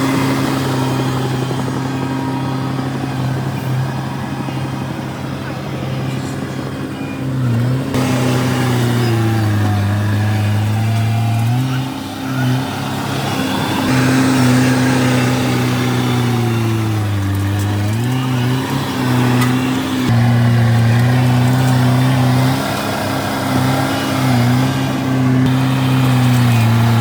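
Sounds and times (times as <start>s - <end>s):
diesel engine running under load: 0.0s - 27.0s.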